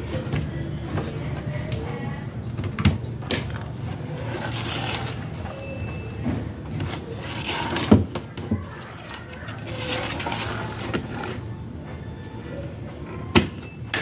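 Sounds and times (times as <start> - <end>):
clicks and knocks of handling parts: 0.1 - 4.0.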